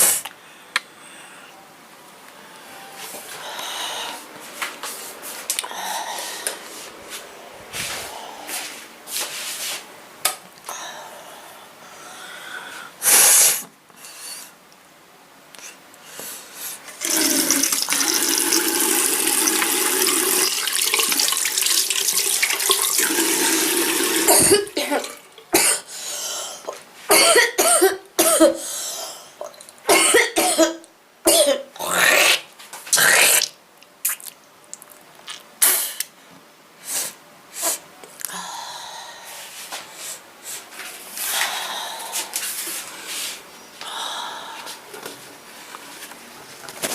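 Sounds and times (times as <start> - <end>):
girl coughing: 24.2 - 25.9, 27.1 - 28.6, 29.9 - 31.7.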